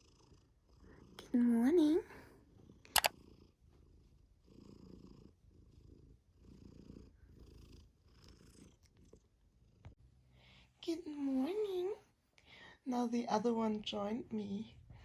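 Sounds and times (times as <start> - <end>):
cat purring: 0.0 - 10.4
sharp click: 2.9 - 3.1.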